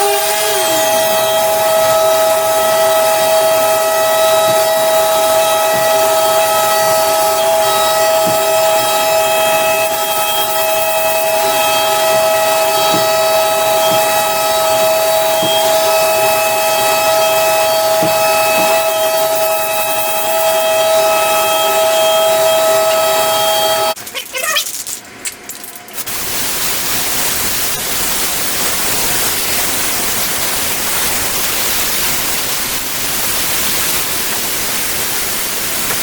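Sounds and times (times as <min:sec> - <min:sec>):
electric sander whining: 0:00.0 - 0:24.0.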